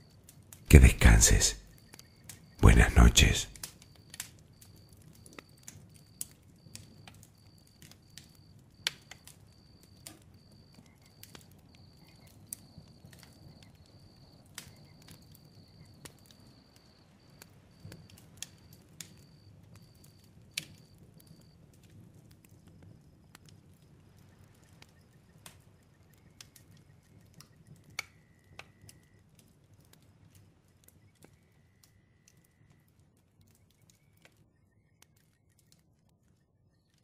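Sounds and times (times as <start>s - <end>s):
soft crackling clicks: 24.2s - 37.0s.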